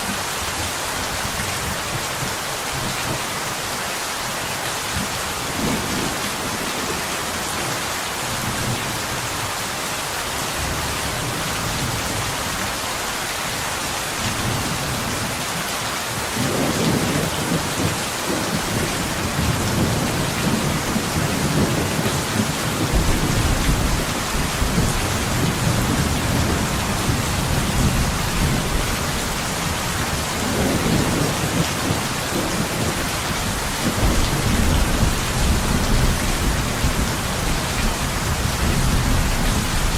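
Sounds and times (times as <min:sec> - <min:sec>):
rain hissing: 0:00.0 - 0:39.9
thunder rumbling: 0:16.4 - 0:39.9.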